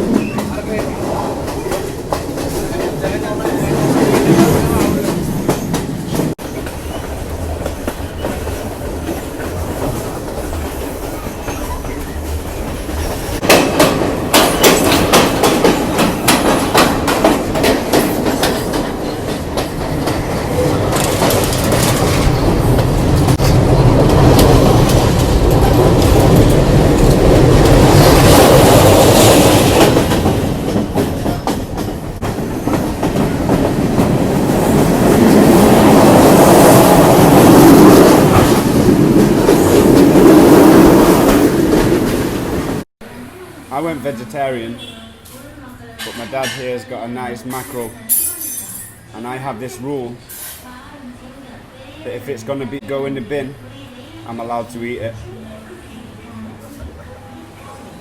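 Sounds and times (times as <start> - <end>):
wheels clacking over rail joints: 0.0 - 42.8
train rumbling on track: 0.0 - 44.2
train rushing noise: 0.0 - 44.9.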